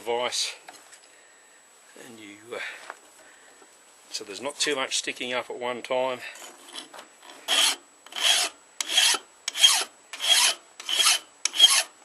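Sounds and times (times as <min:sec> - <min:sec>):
file rasping on metal blade: 0:06.6 - 0:11.9.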